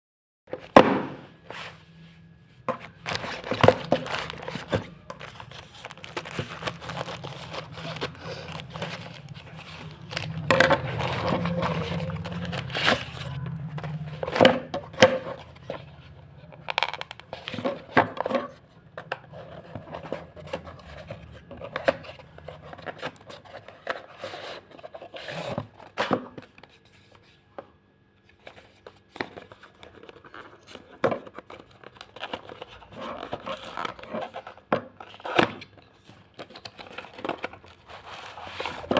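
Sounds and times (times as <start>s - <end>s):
packaging rustling: 2.8s - 18.4s, 28.4s - 38.9s.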